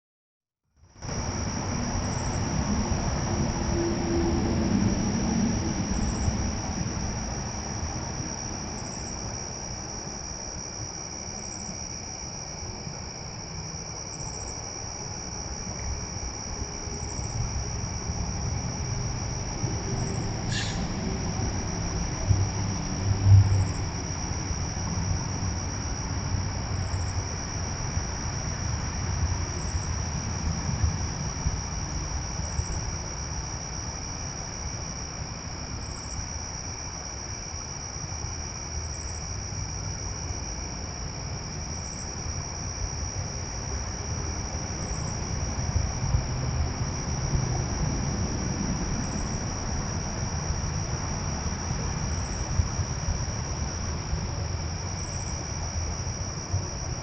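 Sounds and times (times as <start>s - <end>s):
crickets trilling: 0.8s - 57.0s
low background rumble: 14.8s - 34.0s.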